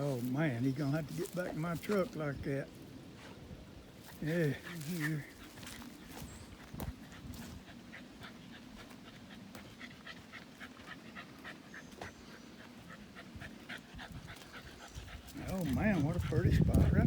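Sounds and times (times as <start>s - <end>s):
dog panting: 4.0s - 17.0s.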